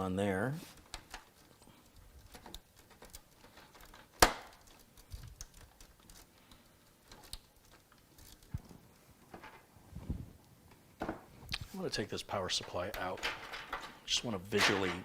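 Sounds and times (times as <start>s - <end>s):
cable handling clicks: 0.7s - 8.9s.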